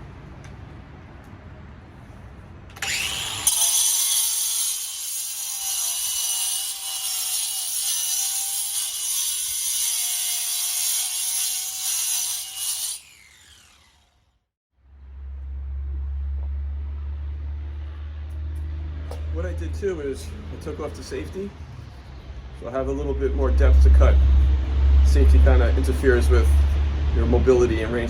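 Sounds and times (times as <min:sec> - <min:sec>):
angle grinder grinding stone: 0:02.8 - 0:13.9.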